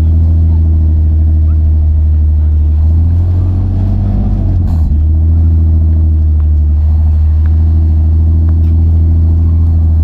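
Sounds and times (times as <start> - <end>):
car engine running at low revs: 0.0 - 10.0.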